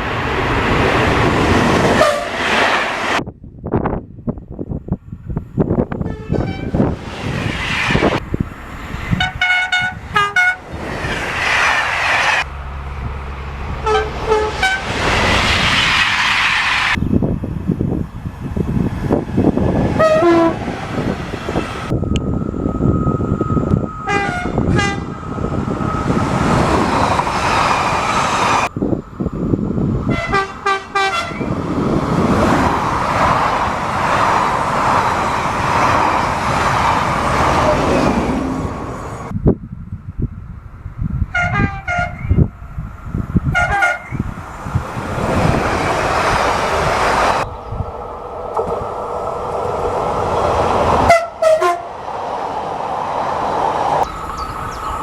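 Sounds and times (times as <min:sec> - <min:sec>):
passing train rumble: 0:00.0 - 0:55.0
train horn blasts: 0:02.0 - 0:02.6, 0:06.0 - 0:06.9, 0:09.1 - 0:10.6, 0:12.4 - 0:15.0, 0:20.0 - 0:20.6, 0:23.7 - 0:25.6, 0:30.1 - 0:31.5, 0:41.3 - 0:42.4, 0:43.5 - 0:44.2, 0:51.0 - 0:52.0.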